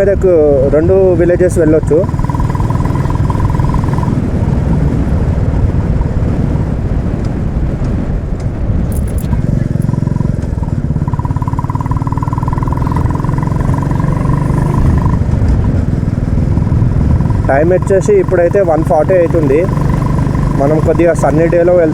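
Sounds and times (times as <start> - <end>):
motorcycle engine running: 0.0 - 21.9
road noise: 0.0 - 21.9.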